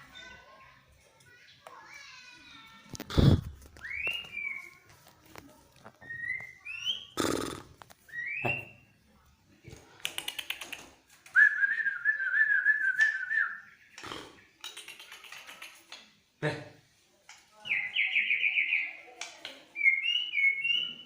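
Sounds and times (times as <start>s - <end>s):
bird whistling song: 3.8s - 4.7s, 6.0s - 7.2s, 8.1s - 8.9s, 11.3s - 13.8s, 17.7s - 19.0s, 19.8s - 21.0s
bird clicking chatter: 10.0s - 11.4s, 13.9s - 16.2s.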